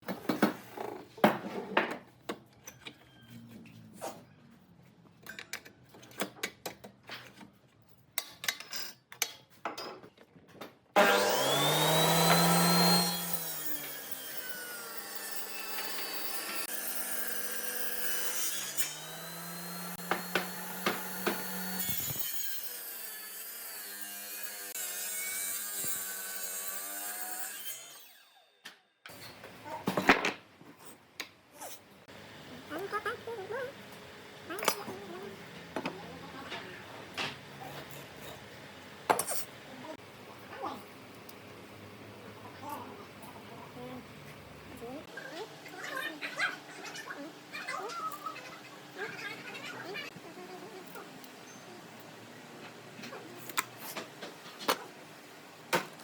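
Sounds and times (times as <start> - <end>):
power saw cutting wood: 11.0 - 28.6.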